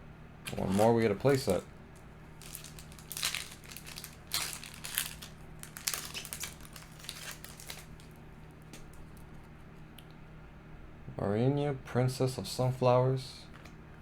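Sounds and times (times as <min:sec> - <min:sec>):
foil wrapper crinkling: 0:00.4 - 0:09.4.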